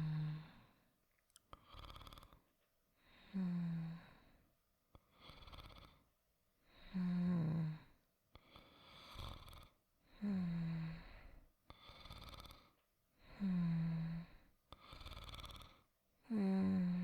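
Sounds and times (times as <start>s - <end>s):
person snoring softly: 0.0s - 0.8s, 1.5s - 2.4s, 5.0s - 6.0s, 6.7s - 17.0s.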